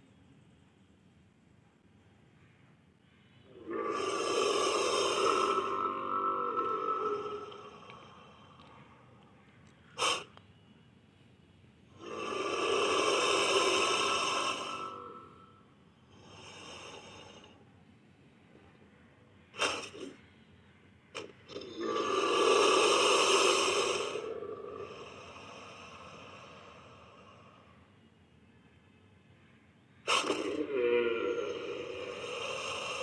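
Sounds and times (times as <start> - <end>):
creature breathy calls: 3.4 - 9.1, 10.0 - 10.3, 12.0 - 17.6, 19.6 - 20.2, 21.1 - 27.7, 30.1 - 33.0
creature snorts: 3.6 - 8.2, 12.0 - 15.4, 19.6 - 20.2, 21.2 - 25.3, 30.1 - 33.0.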